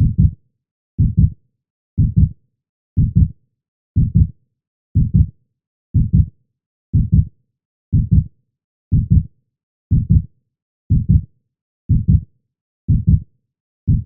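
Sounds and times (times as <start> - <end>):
heartbeat thumps: 0.0 - 0.4, 1.0 - 1.3, 2.0 - 2.3, 3.0 - 3.3, 4.0 - 4.3, 5.0 - 5.3, 6.0 - 6.3, 7.0 - 7.3, 7.9 - 8.3, 8.9 - 9.3, 9.9 - 10.2, 10.9 - 11.2, 11.9 - 12.2, 12.9 - 13.2.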